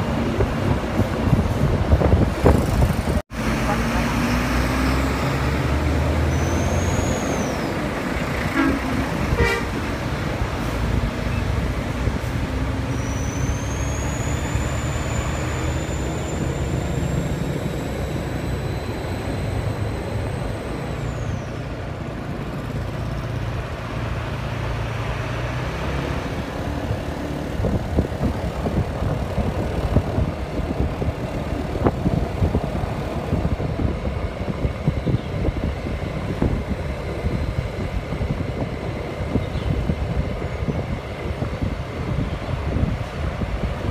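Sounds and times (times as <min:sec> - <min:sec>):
bus diesel engine pulling away: 0:00.0 - 0:43.9
rattling road and traffic noise: 0:00.0 - 0:43.9
high rising whine: 0:12.7 - 0:22.1.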